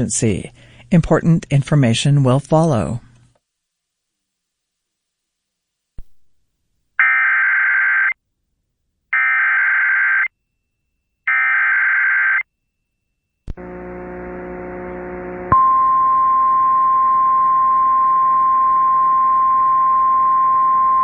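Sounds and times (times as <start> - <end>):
low buzzing hum with hiss: 13.3 - 21.0.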